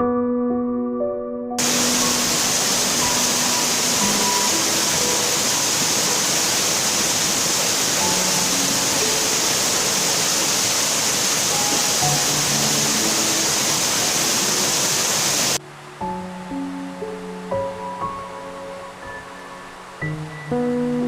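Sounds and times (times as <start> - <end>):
soft ambient music: 0.0 - 10.5, 11.5 - 14.8, 15.6 - 21.0
waterfall rushing: 1.6 - 21.0.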